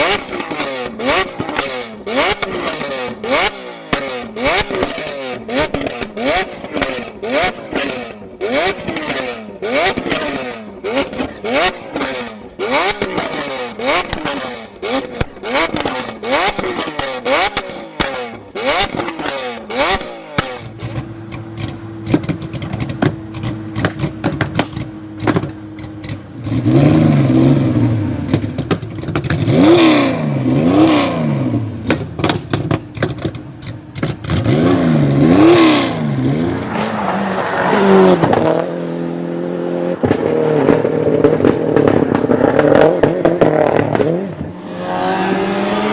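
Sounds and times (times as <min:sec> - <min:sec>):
exhaust pops and crackles: 0:00.0 - 0:09.2, 0:09.8 - 0:36.9, 0:40.0 - 0:44.5
car engine revving: 0:00.0 - 0:45.9
car engine idling: 0:20.6 - 0:35.4.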